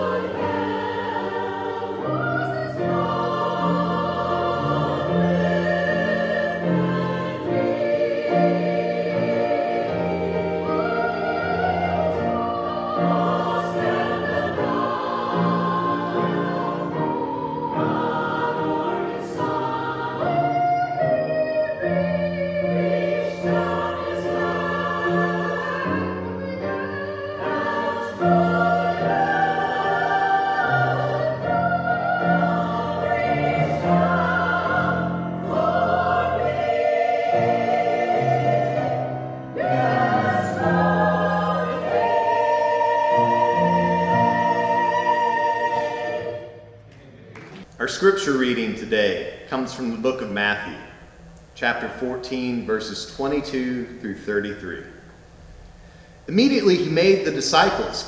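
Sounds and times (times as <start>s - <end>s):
keyboard accompaniment: 0.0s - 46.9s
church choir singing: 0.0s - 58.0s.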